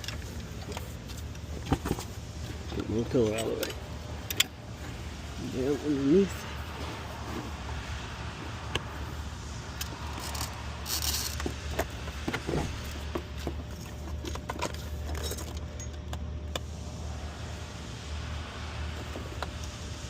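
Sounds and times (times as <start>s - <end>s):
metal tools clinking: 13.7s - 16.2s.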